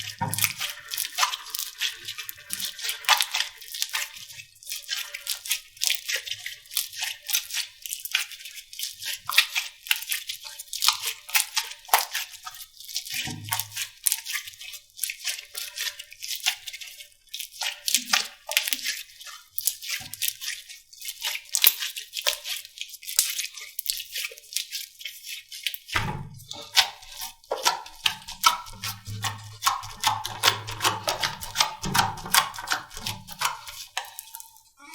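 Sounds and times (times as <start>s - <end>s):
soft low thump: 26.0s - 26.5s.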